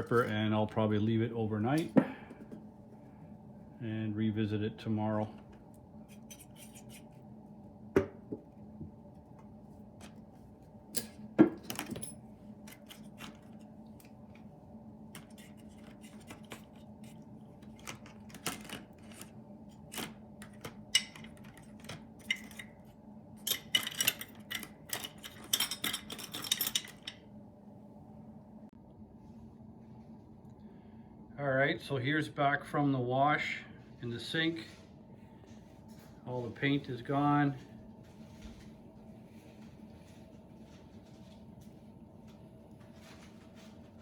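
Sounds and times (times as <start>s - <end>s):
small metal parts clinking: 23.4s - 27.2s.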